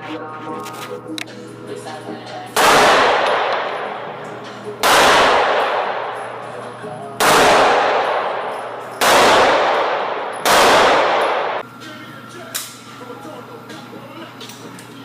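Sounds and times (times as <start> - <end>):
handgun shots with ringing decay: 2.5 - 11.6.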